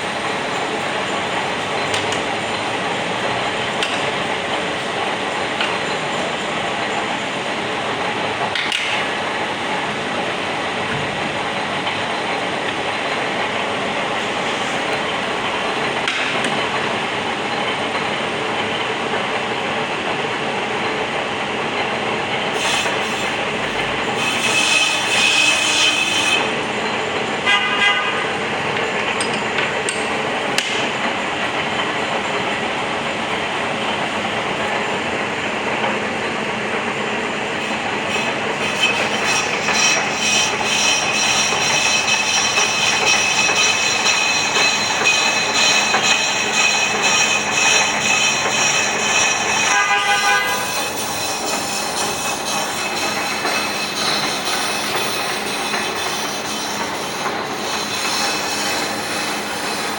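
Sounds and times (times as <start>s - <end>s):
lathe cutting tool grinding hiss: 22.5s - 26.8s, 37.2s - 59.9s
horn-like tone: 27.5s - 28.3s, 49.7s - 50.7s.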